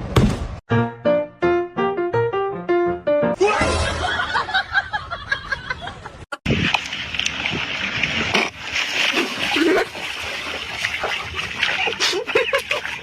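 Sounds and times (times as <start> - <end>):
water splashing and sloshing: 6.4 - 13.0.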